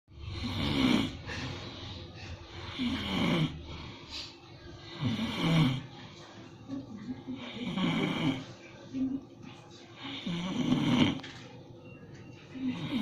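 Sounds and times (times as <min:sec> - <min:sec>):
person snoring: 0:00.2 - 0:01.4, 0:02.6 - 0:03.9, 0:04.9 - 0:05.9, 0:07.4 - 0:08.5, 0:10.0 - 0:11.2, 0:12.7 - 0:13.0.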